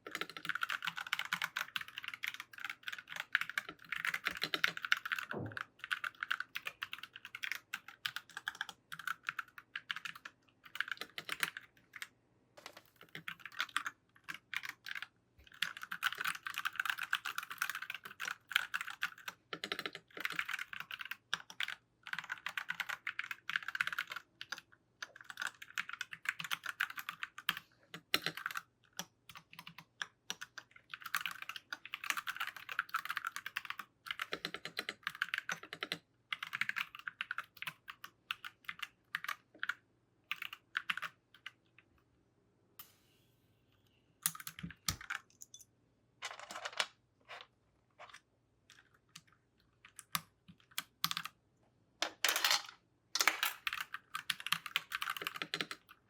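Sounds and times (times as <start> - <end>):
mechanical keyboard clacking: 0.1 - 11.6.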